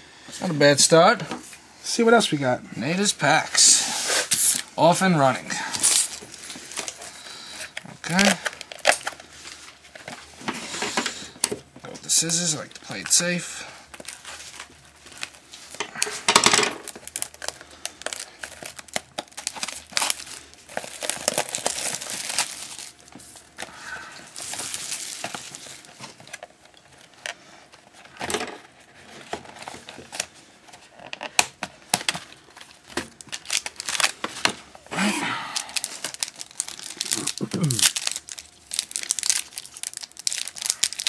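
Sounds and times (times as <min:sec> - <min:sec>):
card pack wrapper crinkling: 0:05.6 - 0:10.2, 0:12.9 - 0:27.3, 0:30.9 - 0:34.6, 0:35.4 - 0:41.0.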